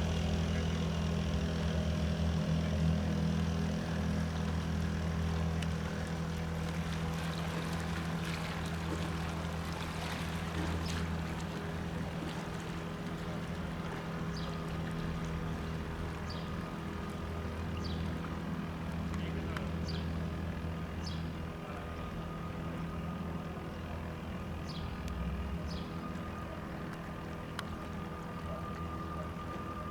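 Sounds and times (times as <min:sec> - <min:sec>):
turboprop engines droning: 0:00.0 - 0:29.9.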